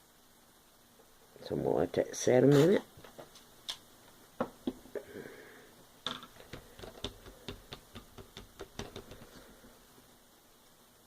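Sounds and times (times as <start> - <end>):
craft items clicking on a table: 6.1 - 9.4.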